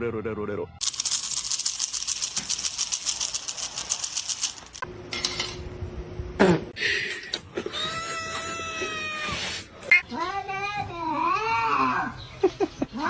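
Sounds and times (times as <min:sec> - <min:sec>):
rattling clatter: 0:00.8 - 0:04.8.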